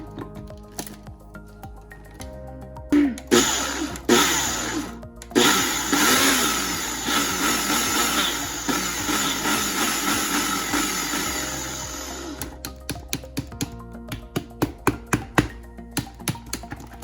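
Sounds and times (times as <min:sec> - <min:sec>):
background music: 0:00.0 - 0:17.0
blender grinding: 0:03.0 - 0:12.5.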